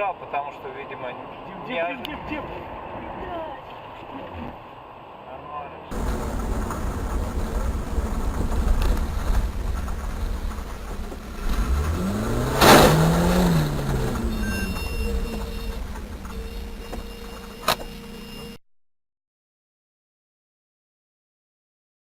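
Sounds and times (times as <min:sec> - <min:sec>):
car road noise rumble: 0:05.9 - 0:18.6
engine revving: 0:05.9 - 0:18.6
sudden loud bang: 0:06.0 - 0:17.8.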